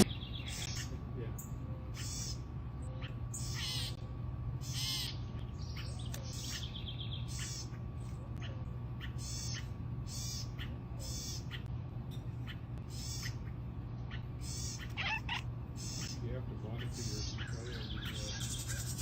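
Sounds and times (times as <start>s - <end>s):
chirps: 0.0s - 4.0s, 4.6s - 11.7s, 12.4s - 19.0s
steady low hum: 0.0s - 19.0s
animal making rasping calls: 14.1s - 16.2s.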